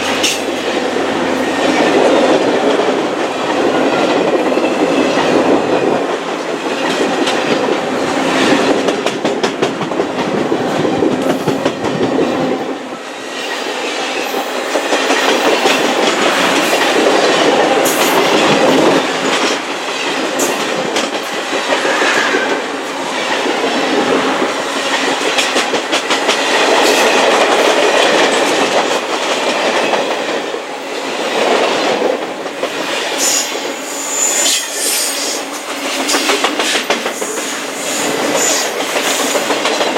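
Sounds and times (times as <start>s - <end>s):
wheels clicking over rail joints: 1.6s - 12.5s, 35.6s - 39.9s.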